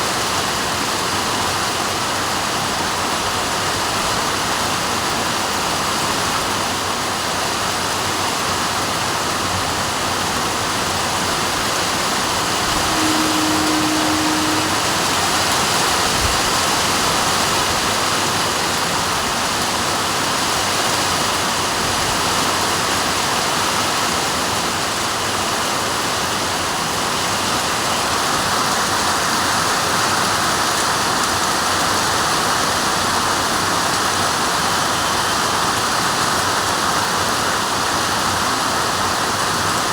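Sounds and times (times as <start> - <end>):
heavy rain hissing: 10.9 - 17.6
low steady tone: 12.5 - 16.1.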